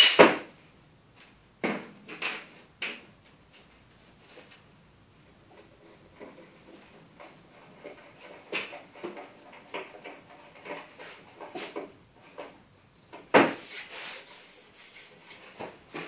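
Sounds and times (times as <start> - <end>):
wooden pieces knocking and rubbing: 5.5 - 16.0.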